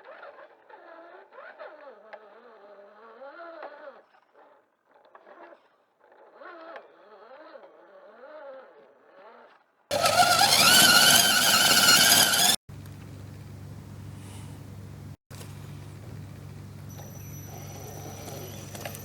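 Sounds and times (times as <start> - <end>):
electric motor and gears whining: 9.9 - 19.0
low steady hum: 12.7 - 19.0.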